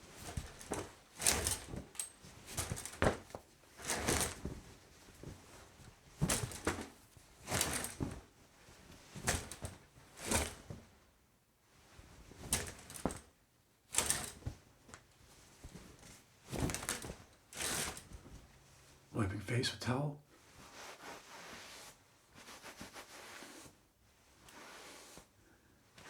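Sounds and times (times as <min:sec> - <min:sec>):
shower curtain sliding on rod: 0:00.2 - 0:04.6, 0:06.2 - 0:08.2, 0:13.9 - 0:14.5, 0:16.5 - 0:18.2, 0:20.5 - 0:25.4.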